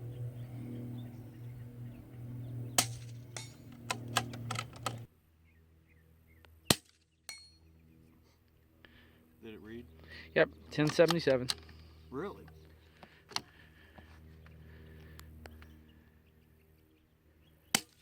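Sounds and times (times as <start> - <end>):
low hum: 0.0 - 18.0
sharp clicks and rattles: 2.8 - 5.1.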